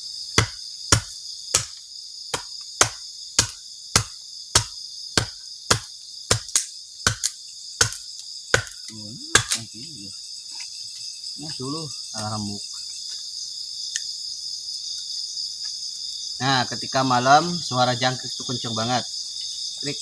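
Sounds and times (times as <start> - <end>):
crickets chirping: 0.0 - 20.0
sharp knocks: 2.3 - 9.6.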